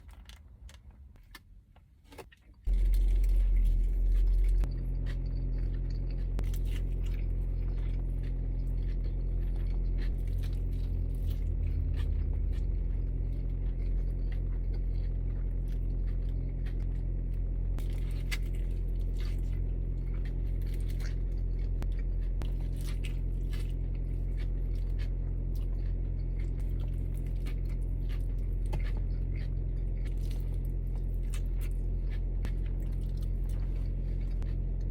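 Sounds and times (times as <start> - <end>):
biting and chewing food: 0.0 - 34.9
steady low hum: 0.0 - 34.9.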